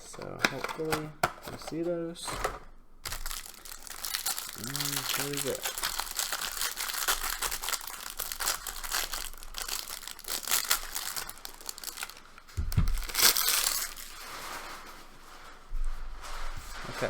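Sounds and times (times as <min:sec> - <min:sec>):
card pack wrapper crinkling: 0:00.0 - 0:14.7
dull bump: 0:12.6 - 0:13.1.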